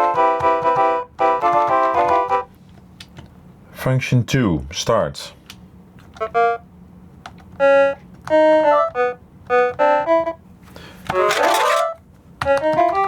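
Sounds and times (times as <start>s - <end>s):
electronic note phrases: 11.1s - 12.0s.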